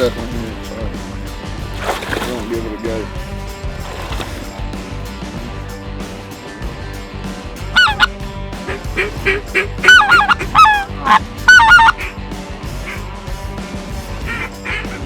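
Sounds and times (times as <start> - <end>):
goose honking: 7.8 - 8.1, 8.7 - 12.2.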